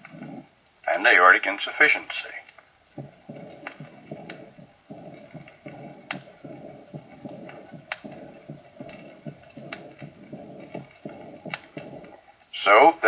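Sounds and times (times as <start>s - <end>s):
breath sounds: 0.0s - 0.5s, 2.4s - 12.5s
blowing heart murmur: 0.0s - 0.6s, 2.8s - 12.4s
heartbeat through stethoscope: 0.0s - 0.6s, 2.8s - 12.3s.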